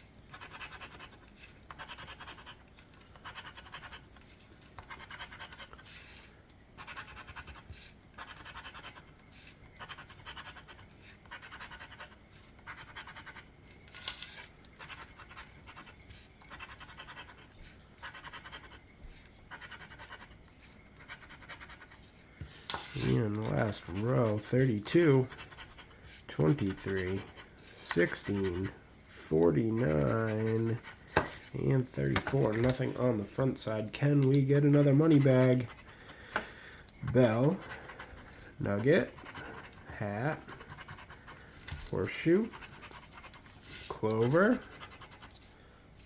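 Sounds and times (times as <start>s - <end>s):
scratching lottery ticket: 0.0s - 36.4s, 37.0s - 45.5s.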